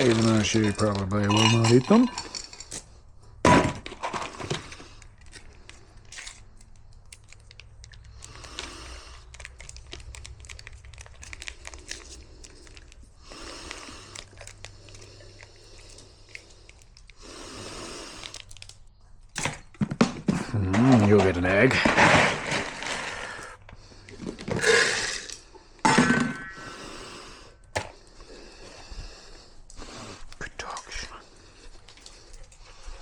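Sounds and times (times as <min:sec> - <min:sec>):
bag crinkling and rustling: 0:00.0 - 0:02.8, 0:03.8 - 0:18.8, 0:19.6 - 0:25.4
kibble clicking: 0:05.2 - 0:17.3.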